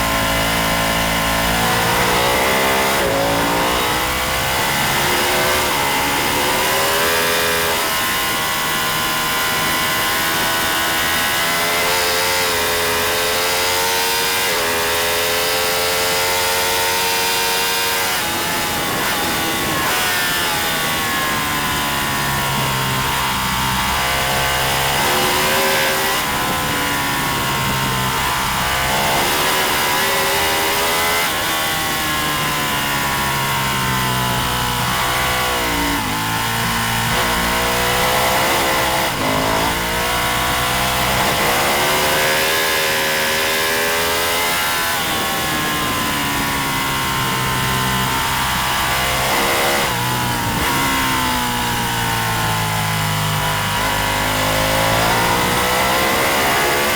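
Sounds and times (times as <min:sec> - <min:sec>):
racing motorcycle engine revving: 0:00.0 - 0:56.9
wind noise: 0:17.9 - 0:42.6.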